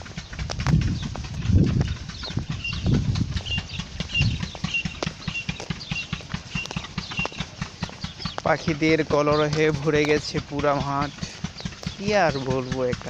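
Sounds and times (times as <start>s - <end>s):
birds calling: 0.0s - 13.0s
clicks and taps: 3.9s - 12.2s.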